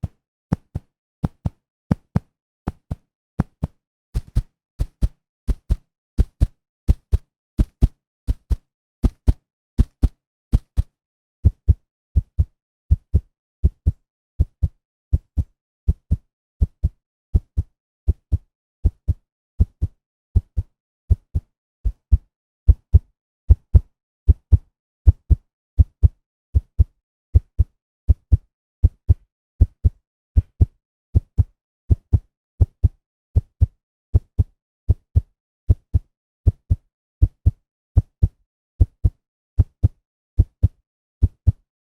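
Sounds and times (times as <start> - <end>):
heartbeat double thumps: 21.9 - 27.6.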